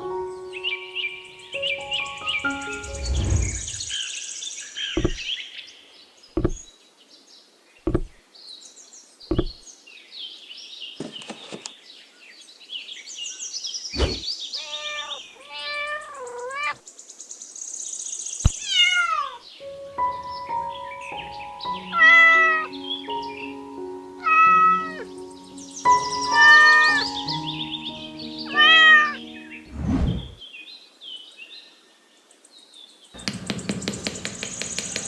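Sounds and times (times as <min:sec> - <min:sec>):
sharp knocks: 0:05.0 - 0:05.2, 0:06.4 - 0:06.6, 0:07.9 - 0:08.1, 0:09.3 - 0:09.6, 0:33.2 - 0:35.0
wavering meow-like cry: 0:14.6 - 0:16.8, 0:18.6 - 0:19.4, 0:24.2 - 0:25.0, 0:26.4 - 0:27.0, 0:28.5 - 0:29.2.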